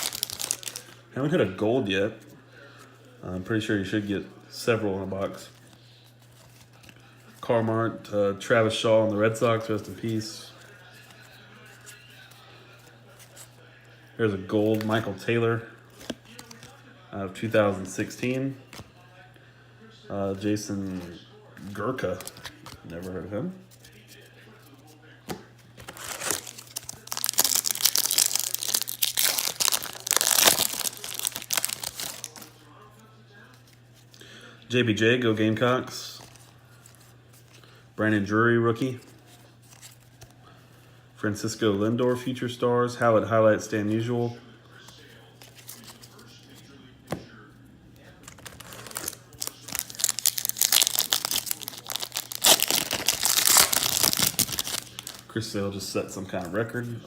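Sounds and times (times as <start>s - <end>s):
foil wrapper crinkling: 0.0s - 1.0s, 25.8s - 32.6s, 48.2s - 55.4s.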